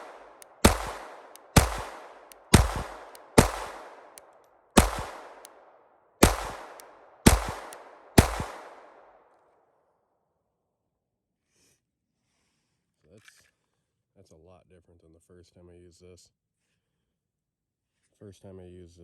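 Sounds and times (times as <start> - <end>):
pistol shots: 0.0 - 9.2.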